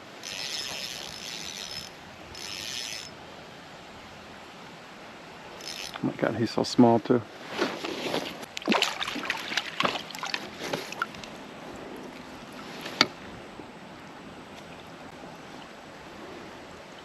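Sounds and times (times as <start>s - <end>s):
creek water washing: 0.0s - 17.0s
water splashing against raft: 7.4s - 11.4s.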